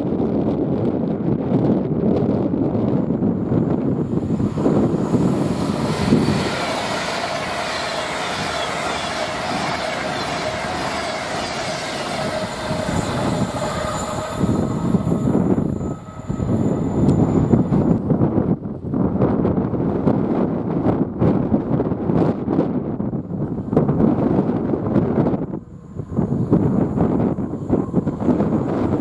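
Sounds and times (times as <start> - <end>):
train passing at speed: 0.0 - 29.0
faint ringing tone: 4.0 - 18.1.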